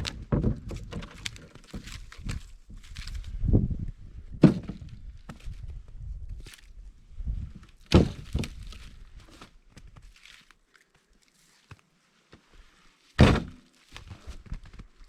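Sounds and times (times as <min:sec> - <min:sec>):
firewood blocks thunking: 0:00.0 - 0:02.4, 0:04.3 - 0:05.1, 0:07.9 - 0:08.6, 0:13.2 - 0:13.6
wood knocking and crunching: 0:00.0 - 0:06.8, 0:07.5 - 0:10.5, 0:13.2 - 0:15.0.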